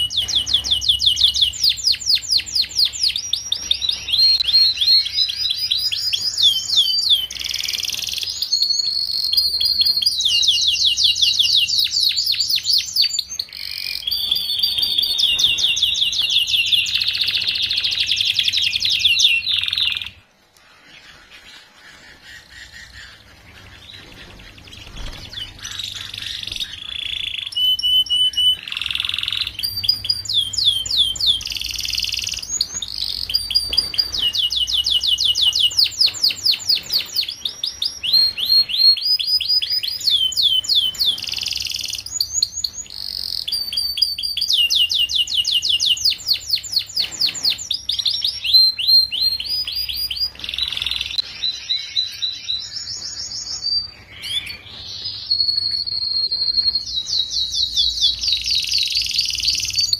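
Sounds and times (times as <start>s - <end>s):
canary singing trills: 0.0s - 59.9s.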